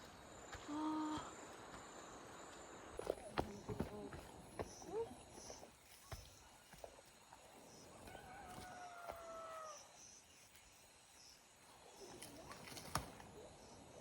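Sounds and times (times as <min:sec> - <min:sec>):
rooster crowing: 0:08.1 - 0:09.9.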